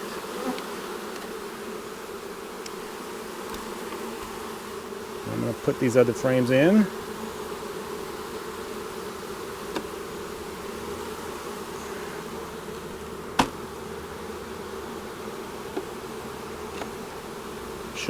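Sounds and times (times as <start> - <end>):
bees buzzing: 0.0 - 18.0
sharp knock: 13.4 - 13.6.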